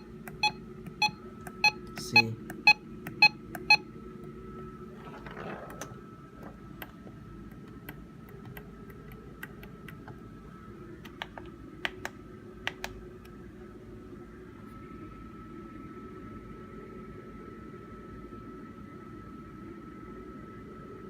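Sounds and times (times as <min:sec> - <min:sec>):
low steady hum: 0:00.0 - 0:21.0
faint clicks and taps: 0:05.8 - 0:10.2, 0:11.0 - 0:13.4.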